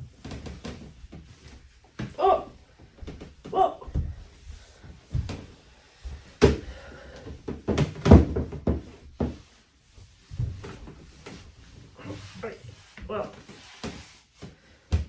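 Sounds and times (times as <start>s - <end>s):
knocks and thumps in echoey room: 1.9s - 9.6s.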